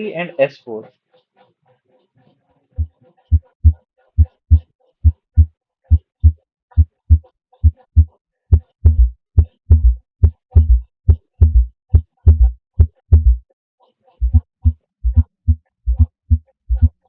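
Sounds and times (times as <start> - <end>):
heartbeat: 2.8 - 13.5, 14.2 - 17.0.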